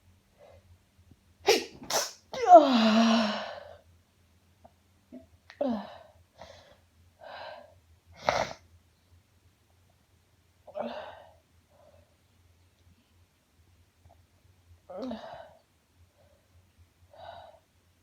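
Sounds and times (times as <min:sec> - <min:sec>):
woman sneezing: 0:01.5 - 0:02.8.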